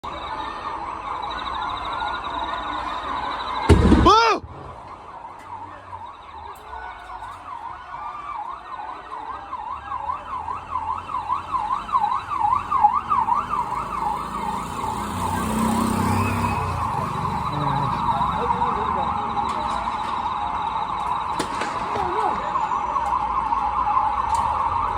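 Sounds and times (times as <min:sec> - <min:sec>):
emergency vehicle sirens wailing: 0:00.0 - 0:24.9
loud explosion: 0:03.7 - 0:04.8.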